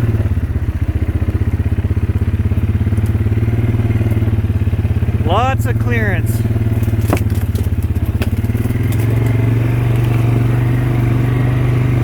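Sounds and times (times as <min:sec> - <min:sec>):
motorbike engine idling: 0:00.0 - 0:12.0.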